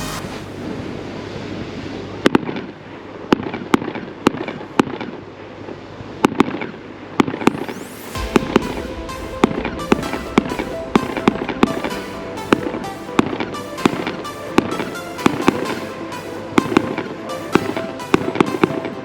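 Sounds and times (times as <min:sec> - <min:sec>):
music with bass: 0:00.0 - 0:00.6, 0:07.5 - 0:19.0
fireworks bangs: 0:07.2 - 0:19.0.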